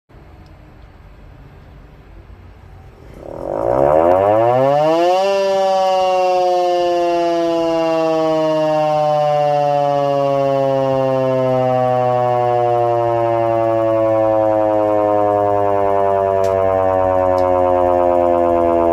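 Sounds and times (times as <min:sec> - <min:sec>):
civil defence siren wailing: 0:02.8 - 0:18.9.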